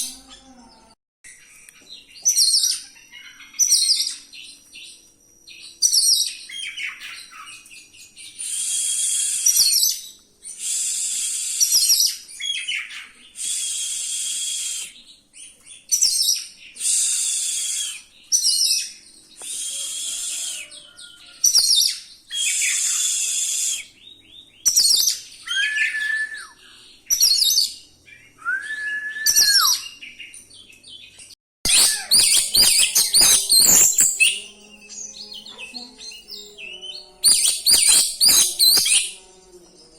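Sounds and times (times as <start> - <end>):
songbird singing: 23.9 - 39.9.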